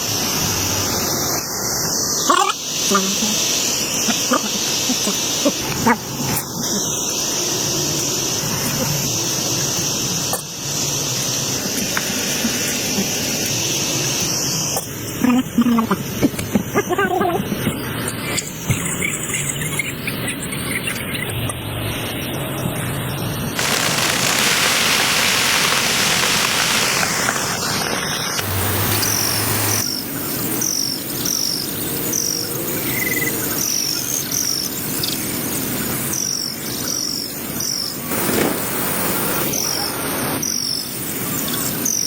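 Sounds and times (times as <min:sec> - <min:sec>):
steady hiss: 0:23.6 - 0:30.9.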